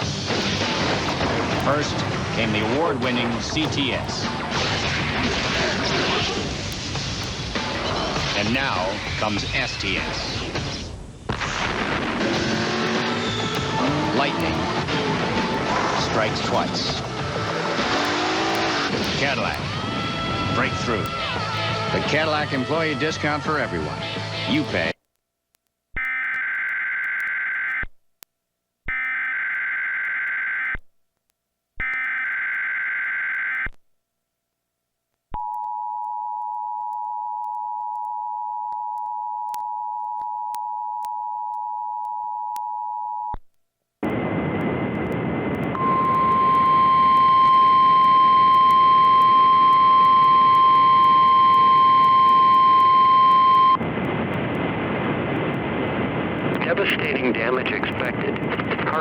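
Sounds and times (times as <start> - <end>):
warbling data tones: 0.0 - 23.7, 26.0 - 27.8, 44.0 - 59.0
radio static hissing: 0.0 - 25.0, 44.0 - 59.0
steady alert tone: 45.7 - 53.8
two-tone attention signal: 45.7 - 53.8.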